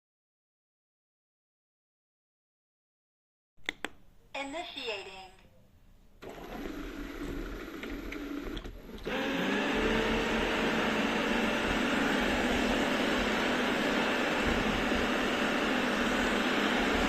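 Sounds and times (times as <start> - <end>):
robot vacuum cleaner whirring: 6.2 - 17.0.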